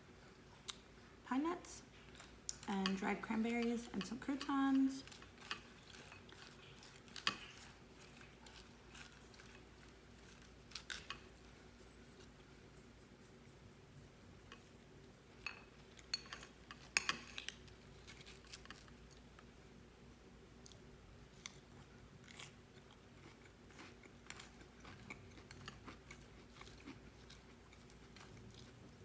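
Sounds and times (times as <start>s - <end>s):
crunchy salad chewing: 5.0s - 13.0s, 15.7s - 19.5s, 20.6s - 29.0s.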